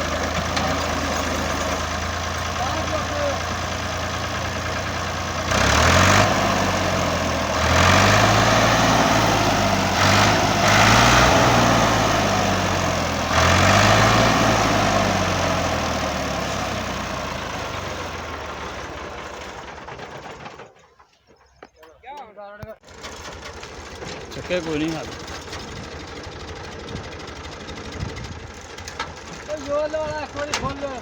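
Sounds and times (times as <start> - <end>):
tractor engine revving: 0.0 - 20.8, 22.8 - 31.0.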